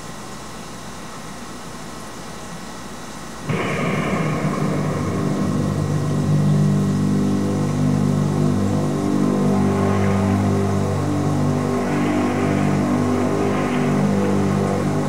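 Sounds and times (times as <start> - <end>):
loud low droning tones: 3.4 - 15.0.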